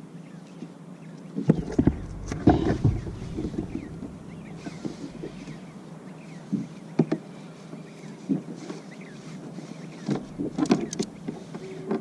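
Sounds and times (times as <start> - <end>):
steady low hum: 1.6 - 6.5, 10.0 - 12.0.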